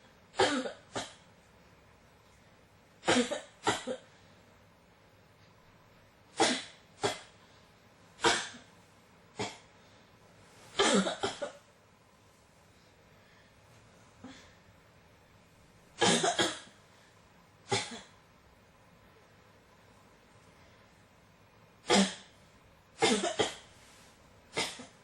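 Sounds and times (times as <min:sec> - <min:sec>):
person coughing: 0:00.4 - 0:01.2, 0:03.0 - 0:04.1, 0:08.2 - 0:08.7, 0:10.8 - 0:11.6, 0:16.0 - 0:16.8, 0:17.7 - 0:18.1, 0:21.9 - 0:22.3, 0:23.0 - 0:23.7, 0:24.5 - 0:25.0.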